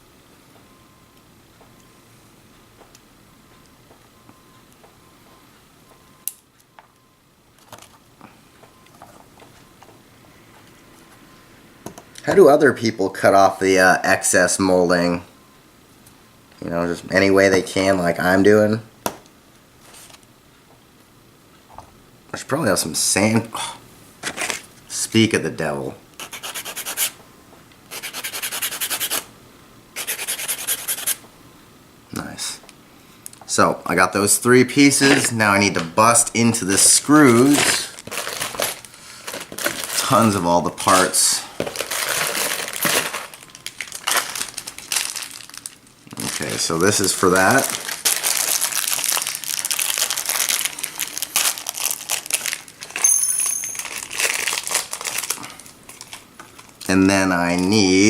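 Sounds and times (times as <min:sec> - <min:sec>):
sandpaper rubbing on plastic: 0:26.2 - 0:27.2, 0:27.9 - 0:29.2, 0:30.0 - 0:31.2
plastic bag crinkling: 0:36.8 - 0:57.7.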